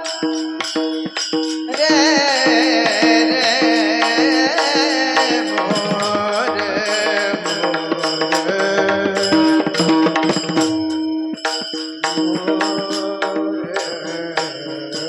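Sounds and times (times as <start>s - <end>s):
drum strokes: 0.0s - 14.6s
person singing long high note: 1.7s - 10.2s.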